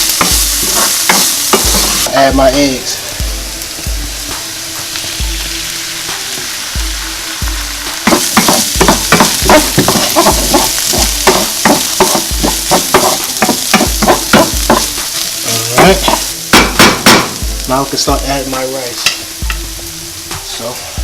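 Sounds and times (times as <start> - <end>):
spatula stirring and scraping: 0.0 - 2.0, 8.0 - 16.3
eggs sizzling in oil: 0.0 - 21.0.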